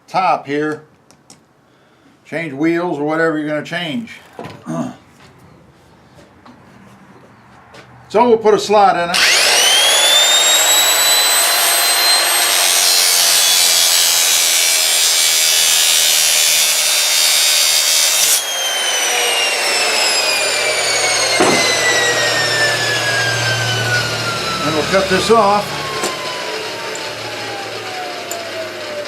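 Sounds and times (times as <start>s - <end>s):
rotary power tool whining: 9.1s - 29.0s
tool grinding copper pipe: 9.2s - 29.0s
knock: 21.4s - 21.7s.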